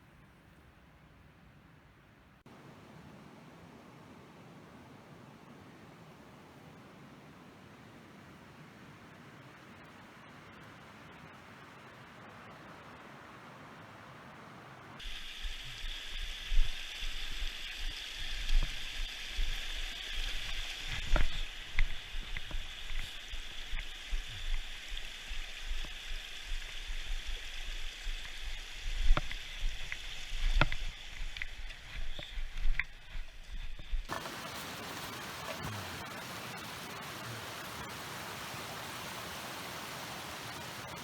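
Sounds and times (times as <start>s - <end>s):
flowing water rushing: 13.3s - 33.2s, 34.1s - 41.0s.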